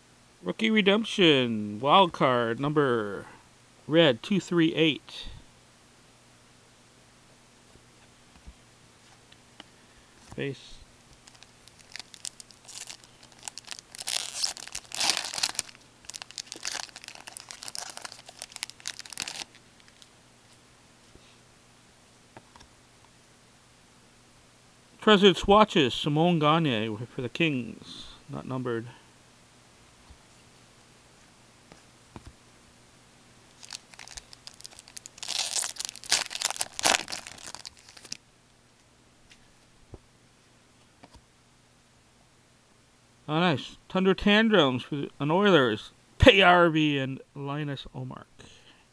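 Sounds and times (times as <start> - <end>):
card pack wrapper tearing and crinkling: 11.2 - 20.1, 33.5 - 38.2.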